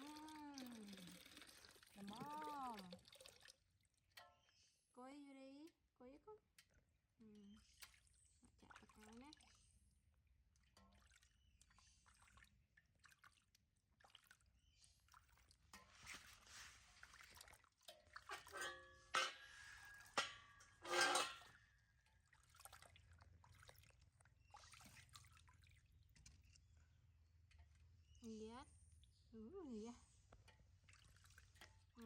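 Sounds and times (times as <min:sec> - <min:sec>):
bath water splashing and dripping: 0:00.0 - 0:04.2, 0:10.5 - 0:21.4, 0:22.0 - 0:26.8, 0:30.4 - 0:32.0.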